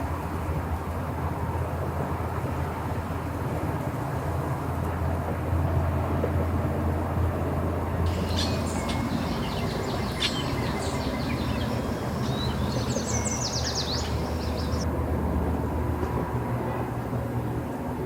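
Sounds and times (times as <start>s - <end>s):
birds chirping: 8.1s - 14.9s
low engine hum: 8.1s - 15.7s.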